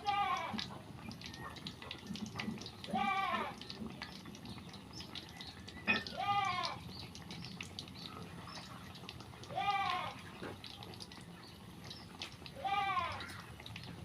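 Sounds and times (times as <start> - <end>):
goat bleating: 0.0 - 0.6, 2.9 - 3.6, 6.1 - 6.8, 9.5 - 10.2, 12.6 - 13.3.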